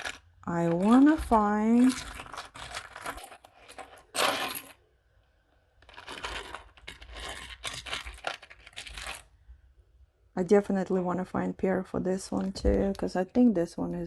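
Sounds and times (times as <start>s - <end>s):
rustling: 0.0s - 4.8s, 5.7s - 9.3s.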